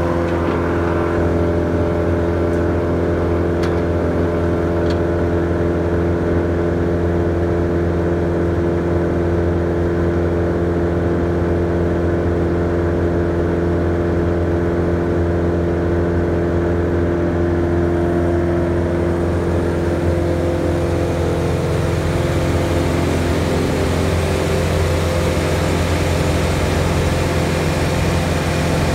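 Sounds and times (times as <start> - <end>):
diesel engine humming: 0.0 - 6.2, 16.4 - 28.9.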